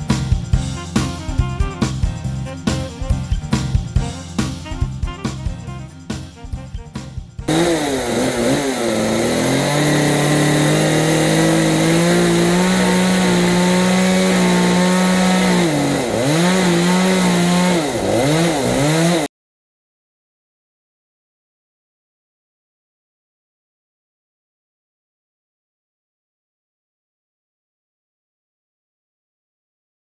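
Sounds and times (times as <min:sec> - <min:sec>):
chainsaw cutting wood: 0:07.5 - 0:19.3.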